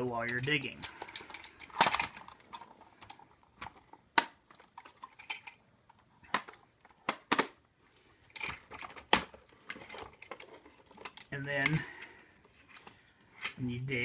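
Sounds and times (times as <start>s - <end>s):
plastic toy clicks and knocks: 0.2s - 7.6s.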